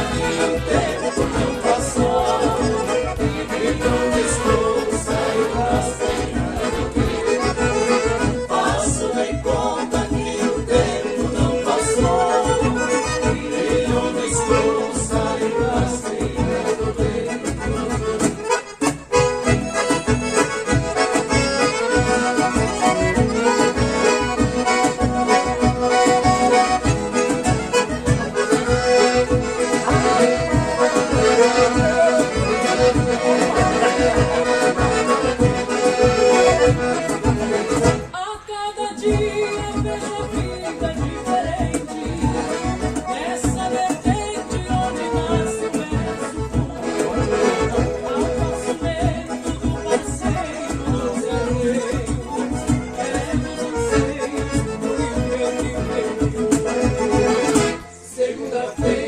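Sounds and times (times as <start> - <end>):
steady bass beat: 0.0 - 9.0
accordion dance music: 0.0 - 59.0.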